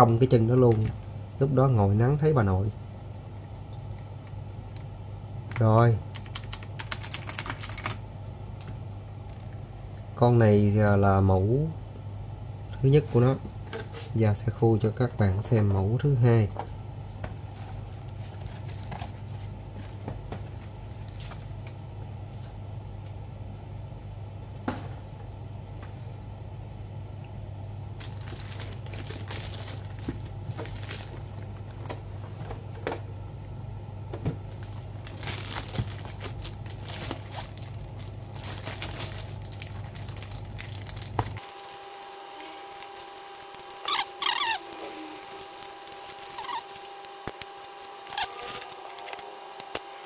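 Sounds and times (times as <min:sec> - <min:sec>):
low electrical hum: 0:00.0 - 0:50.0
plastic and paper crinkling: 0:17.3 - 0:21.8, 0:28.0 - 0:32.0, 0:34.5 - 0:49.9.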